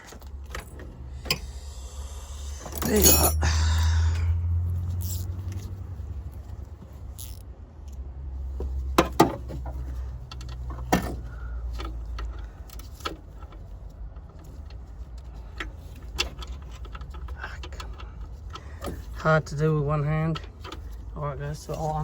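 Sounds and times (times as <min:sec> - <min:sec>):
low rumble: 0:00.6 - 0:06.7
metal tool clinking on bolt: 0:02.7 - 0:03.4, 0:05.0 - 0:05.7.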